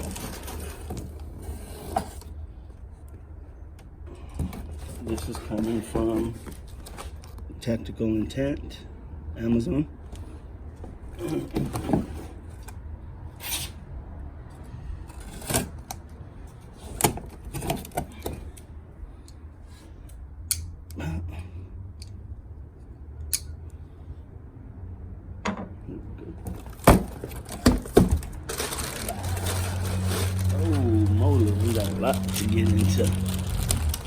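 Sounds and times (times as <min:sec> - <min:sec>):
cardboard box being unpacked: 0:00.0 - 0:02.2, 0:04.3 - 0:07.3, 0:26.5 - 0:34.0
packing material rustling: 0:00.0 - 0:02.2, 0:26.5 - 0:34.0.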